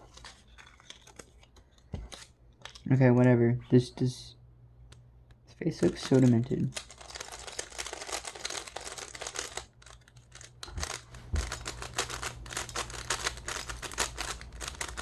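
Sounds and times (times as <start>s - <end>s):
speed cube layers clicking: 10.4s - 15.0s.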